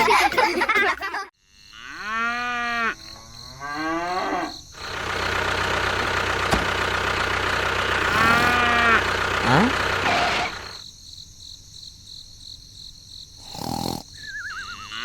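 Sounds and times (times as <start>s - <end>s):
cow mooing: 1.8s - 6.9s, 7.8s - 10.8s, 14.4s - 15.0s
small engine idling: 4.8s - 10.8s.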